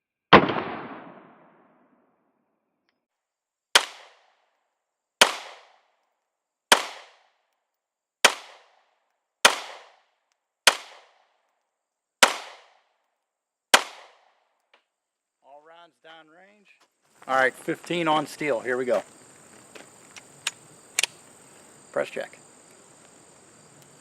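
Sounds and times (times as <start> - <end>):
pistol shots: 0.3 - 1.8, 3.8 - 4.4, 5.2 - 5.9, 6.7 - 7.3, 8.2 - 8.8, 9.4 - 10.0, 10.7 - 11.2, 12.2 - 12.9, 13.7 - 14.4.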